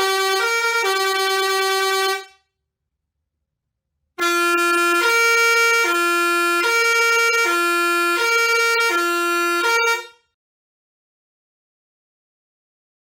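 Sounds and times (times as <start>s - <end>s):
musical air horn two-note tone: 0.0s - 2.4s, 4.2s - 10.4s.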